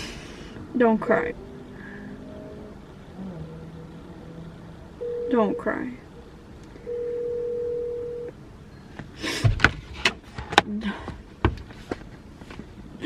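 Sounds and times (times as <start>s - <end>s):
phone ringing tone: 5.0s - 5.8s, 6.9s - 8.3s.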